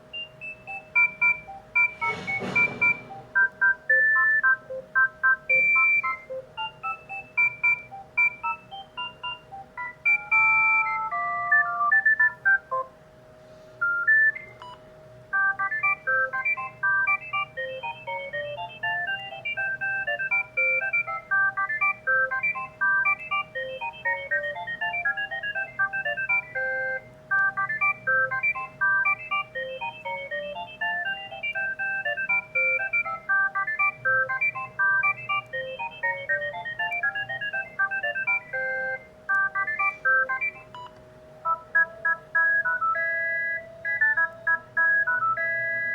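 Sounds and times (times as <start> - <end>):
phone ringtone beeping melody: 0.1 - 12.9, 13.8 - 45.9.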